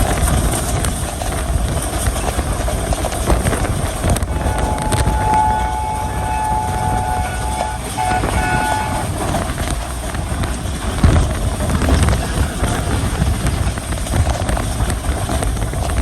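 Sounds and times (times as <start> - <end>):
train rumbling: 0.0 - 16.0
wind noise: 0.0 - 16.0
locomotive horn blasts: 4.2 - 10.2.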